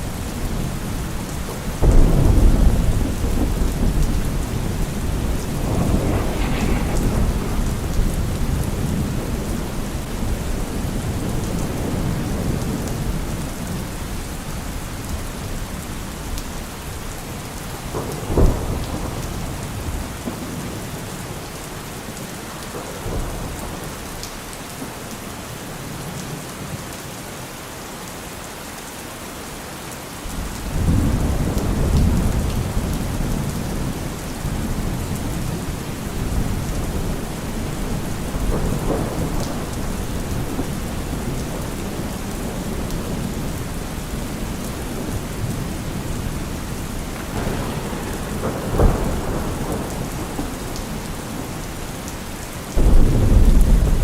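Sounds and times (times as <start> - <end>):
thunder rumble: 0.0 - 21.3, 30.4 - 54.0
steady rain: 0.0 - 54.0
thunder crack: 1.8 - 13.2, 34.5 - 54.0.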